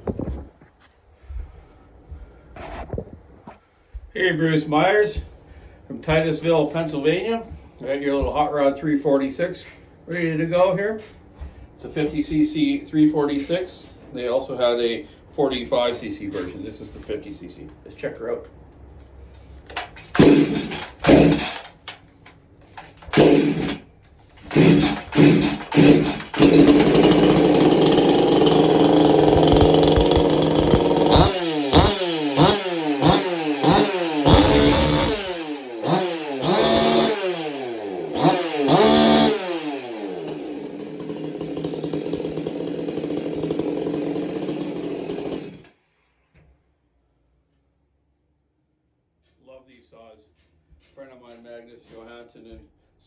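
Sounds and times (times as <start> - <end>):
chainsaw pull-started and revving: 19.7 - 22.1, 22.8 - 46.1.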